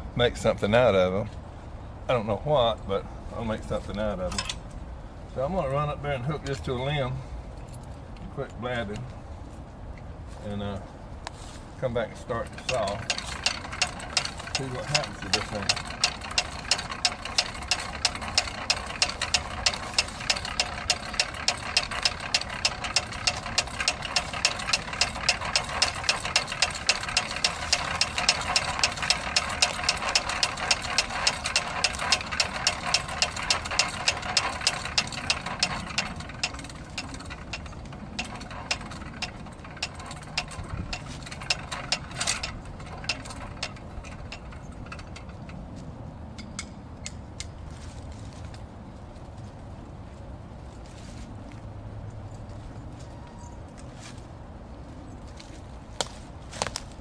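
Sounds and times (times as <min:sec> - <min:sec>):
machine ticking: 0:12.6 - 0:45.4.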